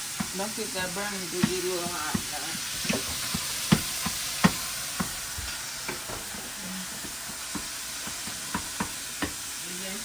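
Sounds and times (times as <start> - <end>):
meat sizzling in a frying pan: 0.0 - 10.0
utensil knocking against pan: 1.4 - 5.2, 7.0 - 9.4.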